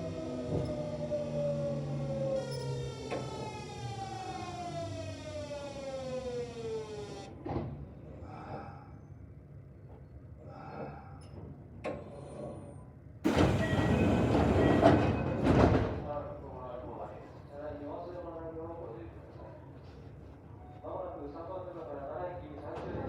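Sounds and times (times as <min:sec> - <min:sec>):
train inverter whine falling in pitch: 0:13.3 - 0:15.2
clunk: 0:13.3 - 0:16.0.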